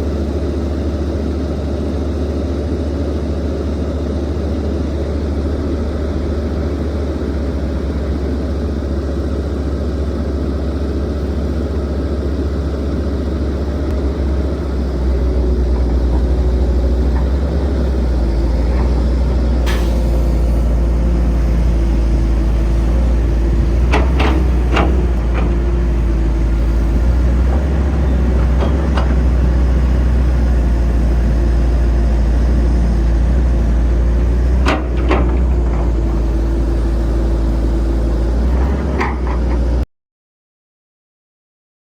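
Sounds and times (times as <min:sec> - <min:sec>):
excavator engine rumbling: 0:00.0 - 0:39.8
metal clanks and knocks: 0:23.8 - 0:25.6.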